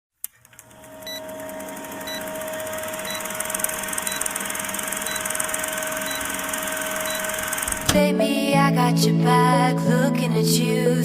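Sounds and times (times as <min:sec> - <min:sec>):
steady held tone: 0:00.9 - 0:08.0
fast ticking rhythm: 0:01.0 - 0:07.9
short high beep: 0:06.0 - 0:07.5.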